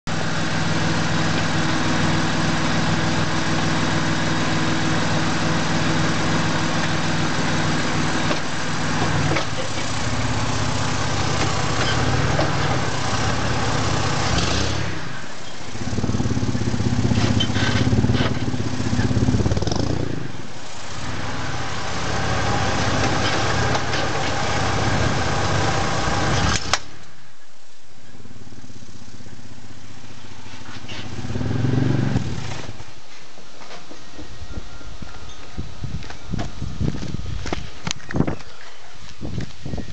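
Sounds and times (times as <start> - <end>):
truck engine idling and revving: 0.0 - 27.4, 28.0 - 33.1
sharp snap: 26.5 - 27.1.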